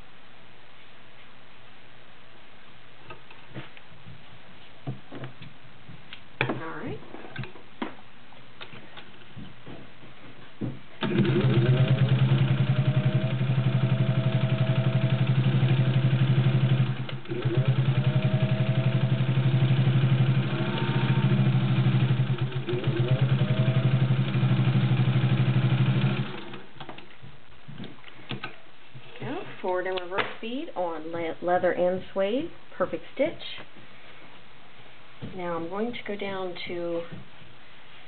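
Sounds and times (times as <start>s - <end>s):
sewing machine stitching: 11.0s - 26.6s.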